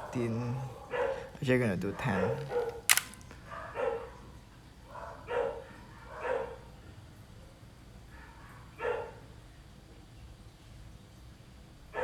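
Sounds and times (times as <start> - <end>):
dog barking: 0.0 - 1.4, 4.9 - 6.7, 8.2 - 9.2.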